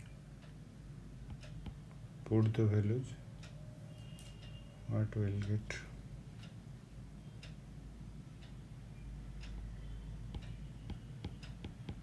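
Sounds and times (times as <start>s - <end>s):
low room hum: 0.0s - 12.0s
clock ticking: 3.4s - 6.6s, 7.4s - 7.6s, 9.3s - 12.0s.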